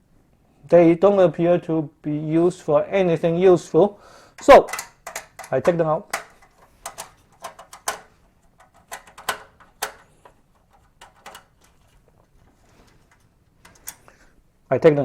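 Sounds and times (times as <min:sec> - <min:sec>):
screwdriver clicking on metal screws: 0:04.4 - 0:11.8.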